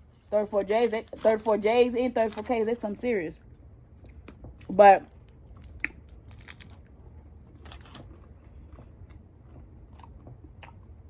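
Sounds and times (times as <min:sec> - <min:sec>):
person chewing crunchy food: 0:03.5 - 0:11.0.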